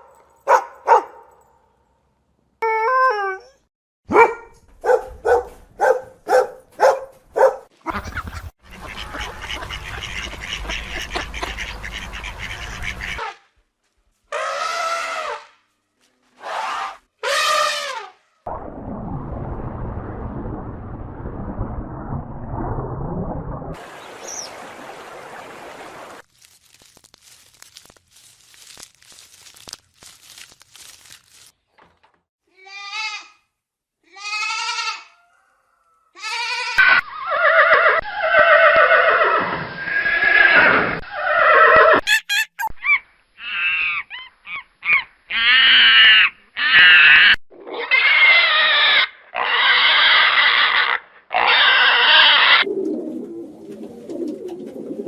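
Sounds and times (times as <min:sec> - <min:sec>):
farm animals calling: 0:06.3 - 0:13.4, 0:42.9 - 0:52.7.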